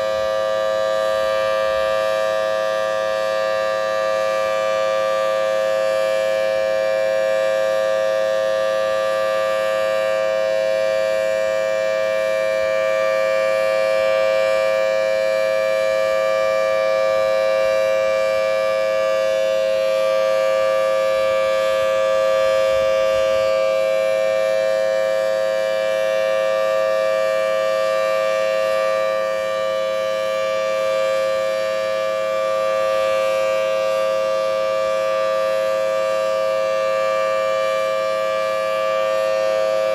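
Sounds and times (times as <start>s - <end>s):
warning siren two-tone chord: 0.0s - 39.9s.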